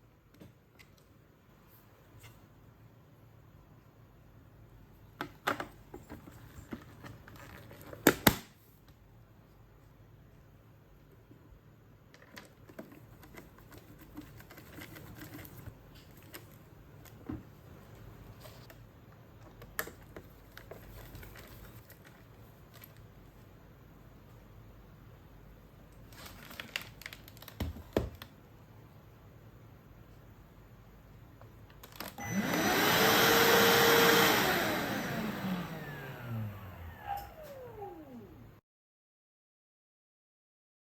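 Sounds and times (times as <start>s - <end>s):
plastic clicks and rustles: 12.1s - 23.3s, 25.9s - 28.4s, 31.7s - 32.2s
vacuum cleaner motor whine: 32.2s - 38.6s.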